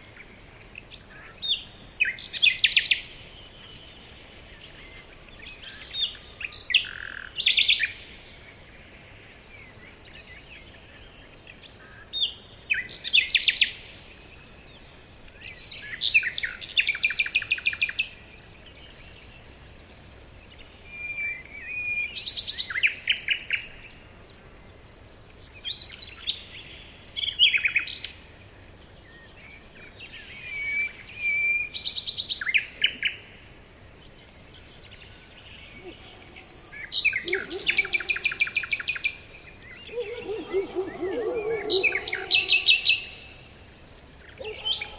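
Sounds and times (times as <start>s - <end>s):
bird singing trills and whistles: 28.9s - 33.4s, 34.3s - 43.4s.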